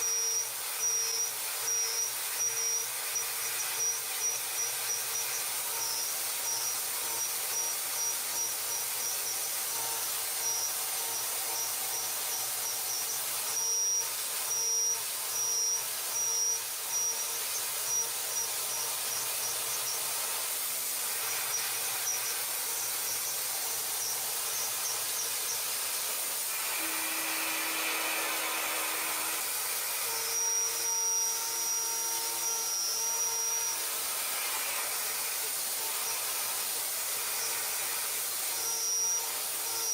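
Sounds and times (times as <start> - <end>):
machine cutting metal: 0.0 - 39.9.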